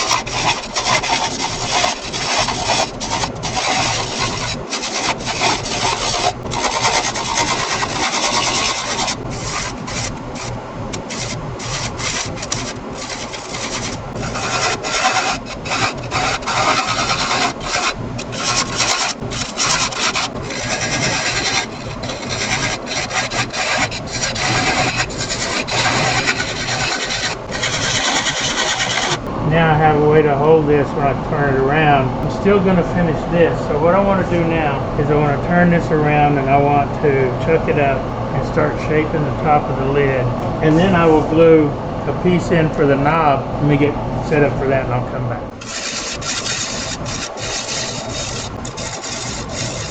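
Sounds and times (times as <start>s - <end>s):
lathe tool scraping wood: 0.0s - 29.3s, 36.0s - 41.6s, 45.5s - 49.9s.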